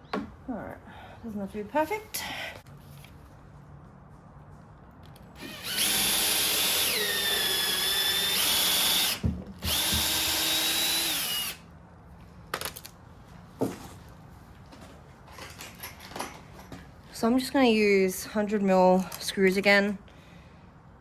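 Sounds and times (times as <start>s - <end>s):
cordless drill driving screw: 5.4s - 11.6s.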